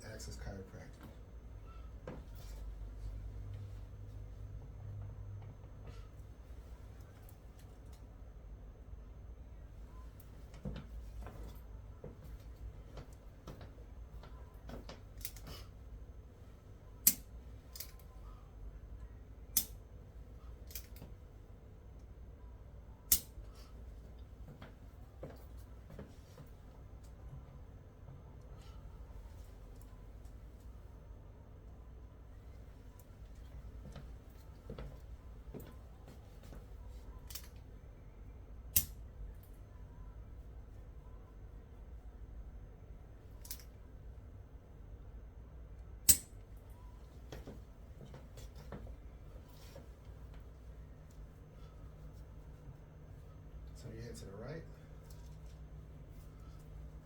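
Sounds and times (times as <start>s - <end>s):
loud sharp joint click: 17.0s - 18.0s, 19.5s - 19.8s, 23.1s - 23.4s, 38.7s - 39.0s, 46.0s - 46.4s.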